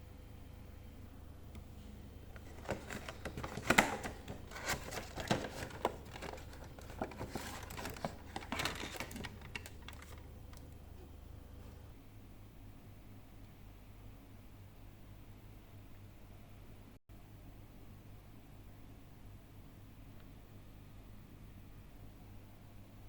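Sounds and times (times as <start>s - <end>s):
cardboard and plastic packaging crinkling: 2.3s - 10.7s.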